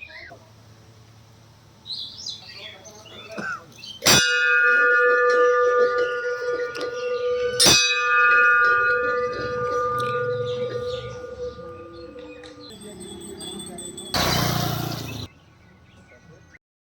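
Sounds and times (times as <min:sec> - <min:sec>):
temple bell ringing: 0:04.1 - 0:15.3.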